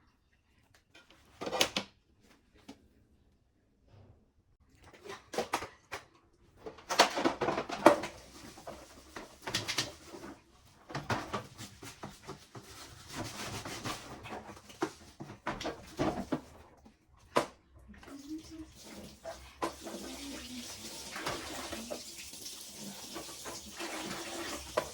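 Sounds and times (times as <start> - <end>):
fridge drawers clattering: 14.0 - 17.5.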